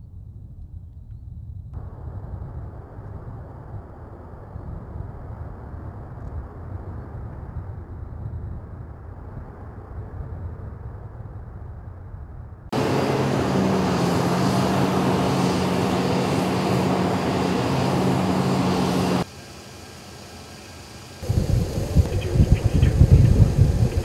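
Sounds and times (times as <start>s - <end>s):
low hum: 0.0s - 24.0s
distant jet engine rumble: 1.8s - 10.1s, 12.7s - 24.0s
loud jet engine noise: 12.7s - 24.0s.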